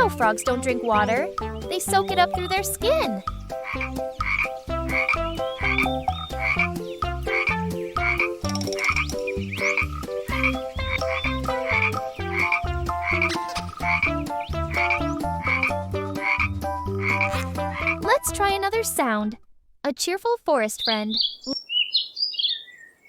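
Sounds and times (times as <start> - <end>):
frogs croaking: 0.0 - 18.0.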